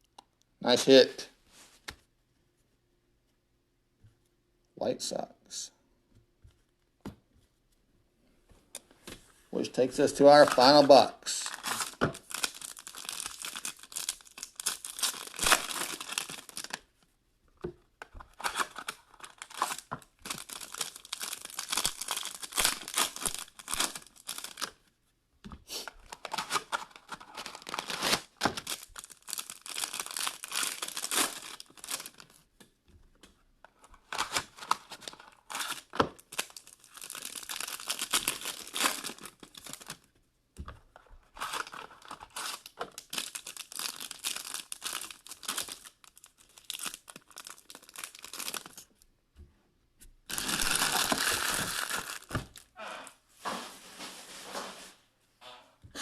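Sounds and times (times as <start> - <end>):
packaging tearing and crinkling: 10.1 - 16.8, 18.2 - 24.8, 26.1 - 32.4, 34.0 - 40.1, 41.3 - 48.9, 50.3 - 52.7.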